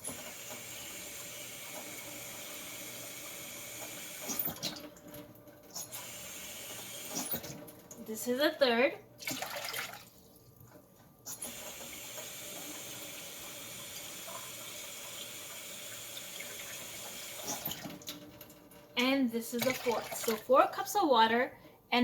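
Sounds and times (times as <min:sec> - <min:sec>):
tap water splashing: 0:09.2 - 0:10.2, 0:19.6 - 0:20.4.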